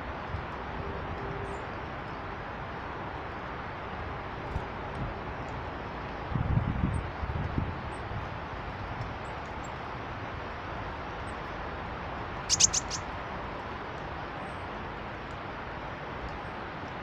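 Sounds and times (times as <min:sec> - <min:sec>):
small bird high calls: 0:12.4 - 0:13.1.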